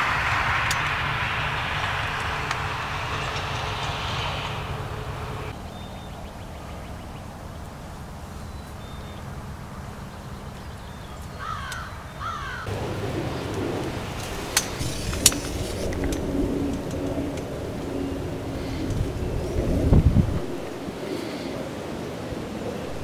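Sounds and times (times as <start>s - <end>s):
low rumble: 0.0s - 5.8s, 12.6s - 21.1s, 22.4s - 23.0s
wind: 0.0s - 23.0s
harsh bird calls: 10.0s - 22.1s.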